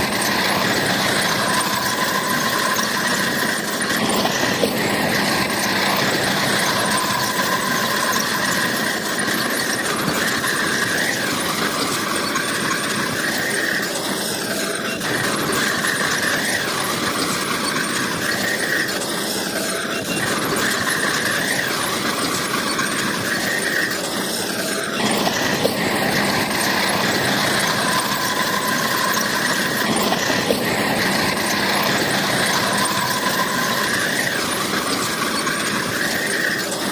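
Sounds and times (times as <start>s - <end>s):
bulldozer engine running: 0.0s - 36.9s
crawler tracks squealing: 0.0s - 36.9s.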